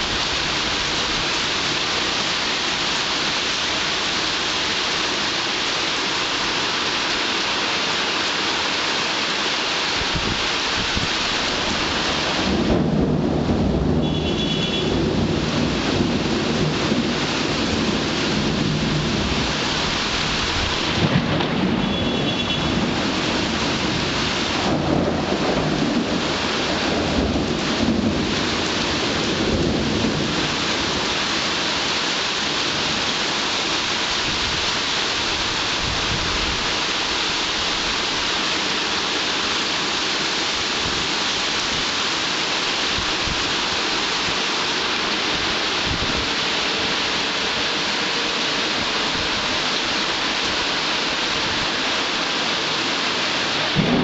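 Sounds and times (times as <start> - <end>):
heavy rain falling: 0.0 - 54.0
low rumble of thunder: 12.1 - 14.2, 14.8 - 19.6, 22.6 - 31.0, 53.7 - 54.0.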